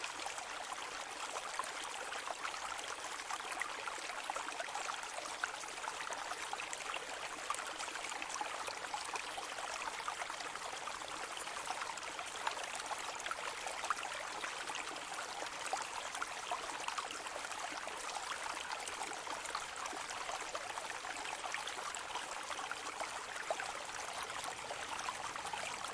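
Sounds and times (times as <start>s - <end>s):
rain falling on a lake: 6.4s - 25.9s.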